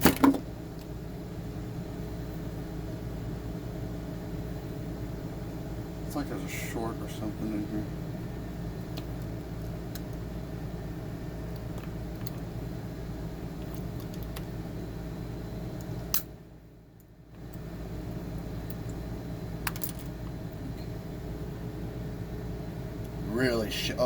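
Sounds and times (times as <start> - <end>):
steady hum: 0.0 - 24.0.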